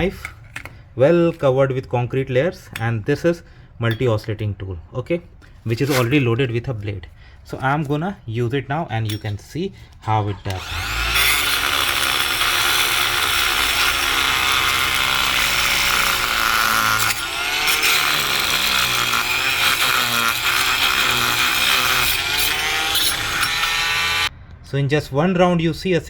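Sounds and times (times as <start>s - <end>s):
oscillating multi-tool scraping concrete: 9.1s - 24.3s.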